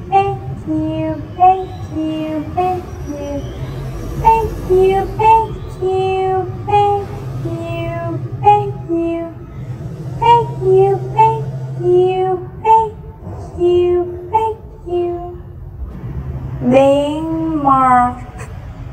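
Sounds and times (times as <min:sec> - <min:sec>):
high-pitched voice chanting: 0:00.0 - 0:09.6, 0:10.2 - 0:15.4
steady low hum: 0:00.0 - 0:18.9.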